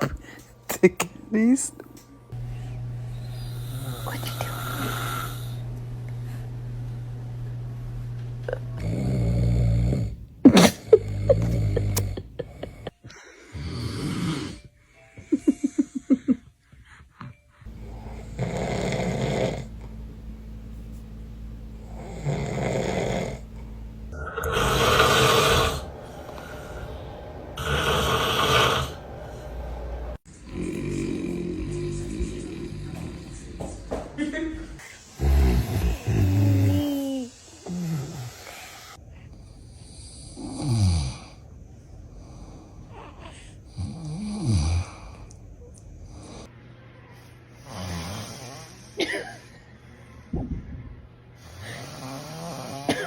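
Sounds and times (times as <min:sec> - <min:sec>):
man snoring: 0:02.4 - 0:05.7, 0:08.4 - 0:14.7, 0:17.7 - 0:19.8, 0:21.8 - 0:23.5, 0:24.1 - 0:33.6, 0:34.8 - 0:39.0, 0:39.7 - 0:41.4, 0:43.7 - 0:45.4, 0:47.6 - 0:48.9, 0:51.4 - 0:53.0.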